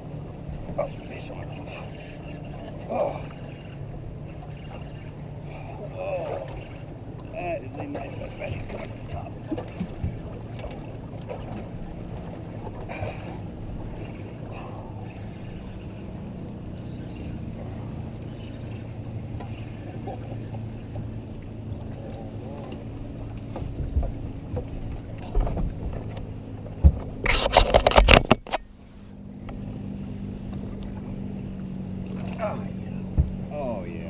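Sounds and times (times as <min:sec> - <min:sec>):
boat motor humming: 0:00.0 - 0:34.0
fish thrashing and rattling: 0:00.7 - 0:20.5.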